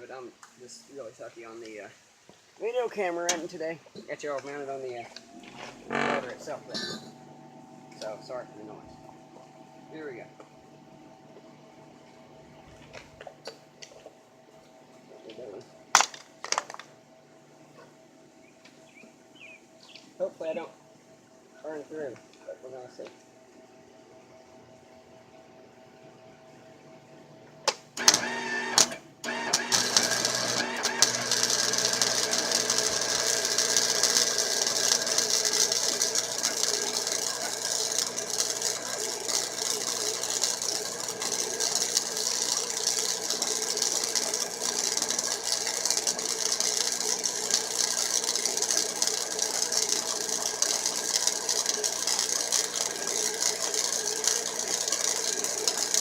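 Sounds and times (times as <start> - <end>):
welding arc crackling: 4.4 - 7.2, 27.7 - 56.0.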